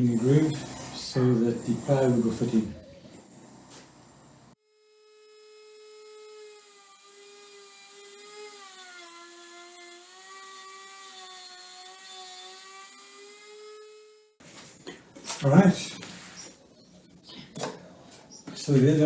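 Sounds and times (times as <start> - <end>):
power tool cutting wood: 0.0 - 2.7, 4.6 - 14.4.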